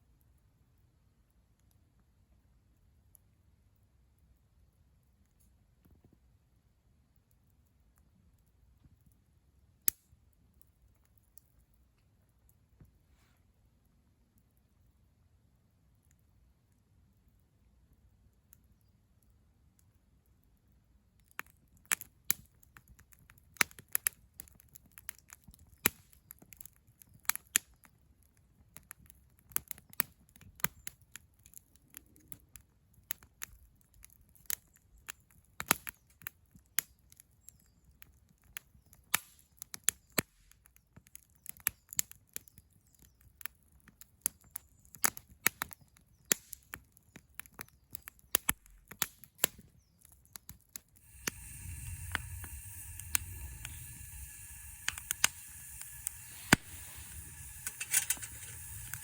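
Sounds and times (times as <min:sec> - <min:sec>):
sharp clicks and pops: 0:47.4 - 0:49.6, 0:50.4 - 0:59.0
faint high hiss: 0:51.0 - 0:59.0.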